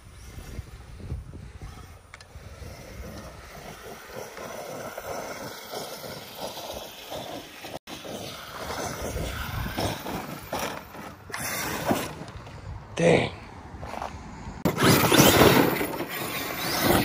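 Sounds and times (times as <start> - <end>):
wind on microphone: 0.0 - 5.4, 8.6 - 10.6
rc truck driving: 0.0 - 17.0
tyres crunching on gravel: 3.0 - 17.0.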